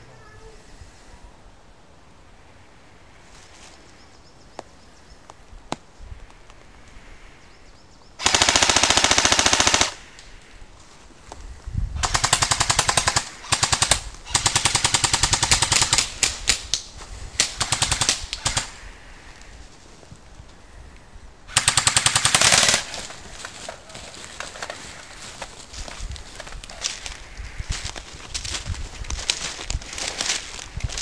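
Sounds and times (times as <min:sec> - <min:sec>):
airsoft rifle firing bursts: 0:08.2 - 0:10.0, 0:12.0 - 0:16.6, 0:17.4 - 0:18.7, 0:21.5 - 0:23.0.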